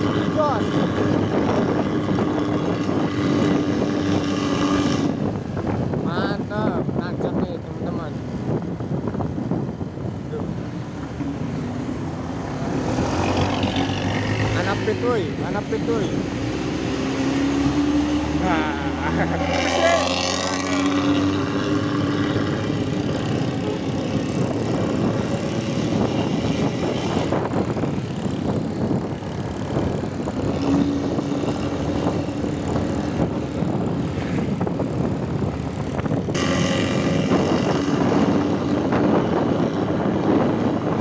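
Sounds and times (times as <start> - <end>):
bus engine with growling exhaust: 0.0 - 41.0.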